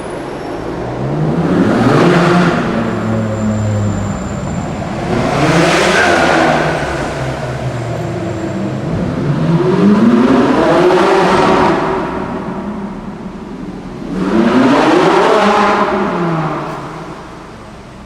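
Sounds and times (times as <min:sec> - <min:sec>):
car engine accelerating in tunnel: 0:00.0 - 0:18.0.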